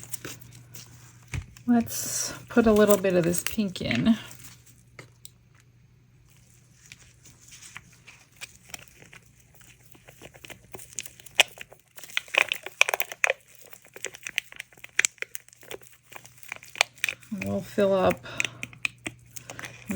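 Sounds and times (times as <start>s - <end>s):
plastic cups crinkling: 0.0s - 19.9s
stir stick scraping plastic cup: 6.3s - 19.9s.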